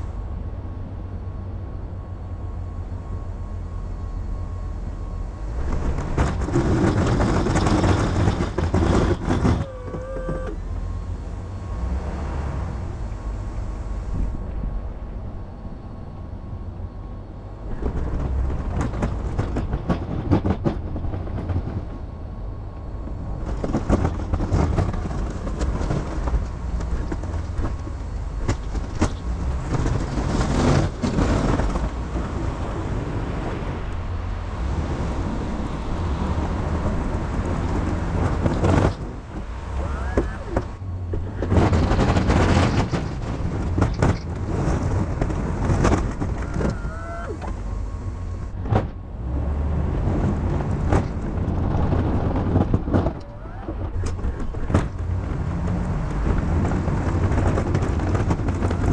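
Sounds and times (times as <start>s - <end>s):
pickup truck engine rumbling: 0.0s - 58.9s
plow rattles and knocks: 5.5s - 10.8s, 17.8s - 22.1s, 23.0s - 33.1s, 34.8s - 47.7s, 49.9s - 58.9s.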